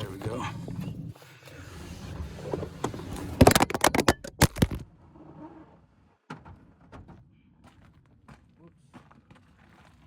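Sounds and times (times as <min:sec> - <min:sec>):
clatter of sharp clicks and knocks: 0:03.3 - 0:04.9.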